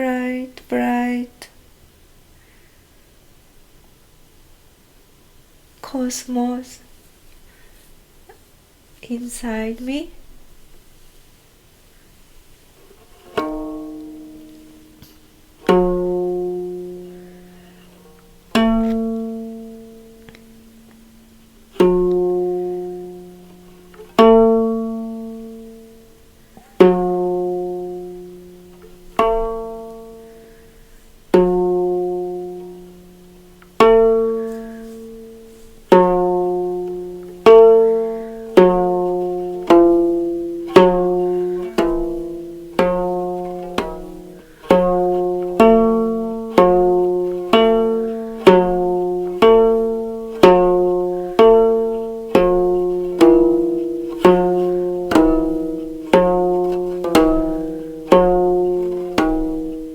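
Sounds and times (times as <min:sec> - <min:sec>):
plucked string notes: 0:12.8 - 0:59.9.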